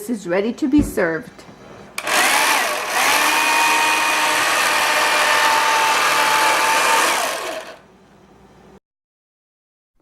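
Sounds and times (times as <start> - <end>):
small electric motor whirring: 2.0 - 7.8.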